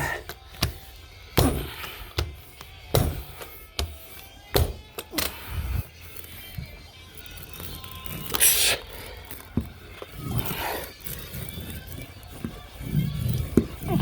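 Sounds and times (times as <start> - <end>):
carpet tools thunking: 0.0 - 5.5
background music: 0.0 - 14.0.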